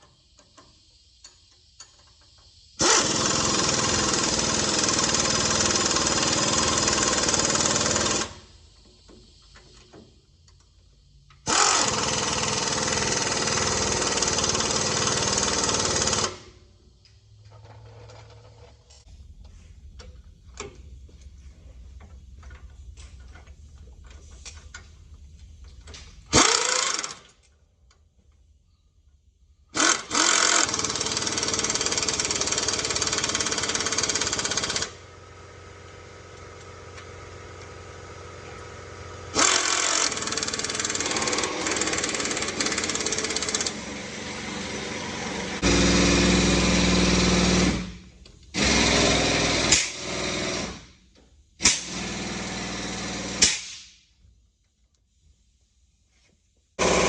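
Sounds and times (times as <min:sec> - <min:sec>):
pneumatic air tool hammering: 0:02.8 - 0:10.0, 0:11.3 - 0:16.6, 0:26.0 - 0:27.4, 0:29.7 - 0:35.1, 0:39.3 - 0:54.1, 0:56.8 - 0:57.0.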